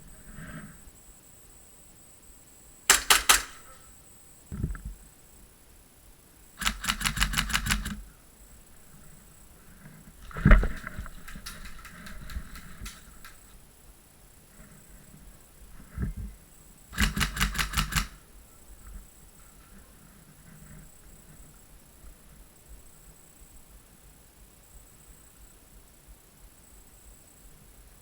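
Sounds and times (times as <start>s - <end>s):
airsoft guns firing bursts: 2.9s - 3.9s, 6.6s - 8.0s, 10.3s - 13.4s, 16.9s - 18.2s.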